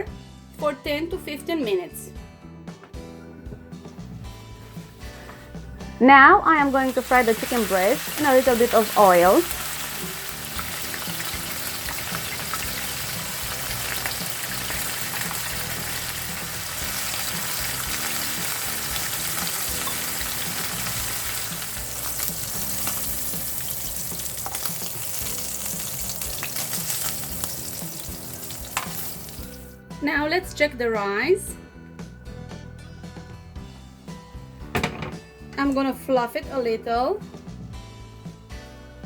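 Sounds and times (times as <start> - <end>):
chicken sizzling in a pan: 6.6 - 29.8.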